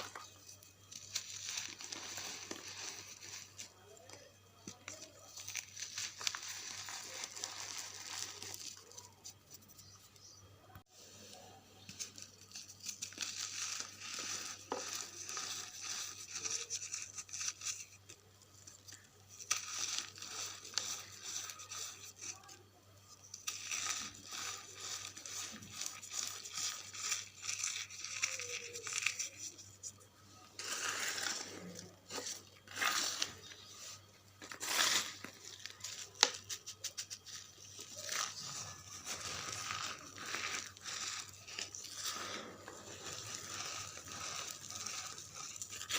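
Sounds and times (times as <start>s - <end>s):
charcoal crunching and crackling: 0.0s - 10.4s, 11.4s - 45.9s.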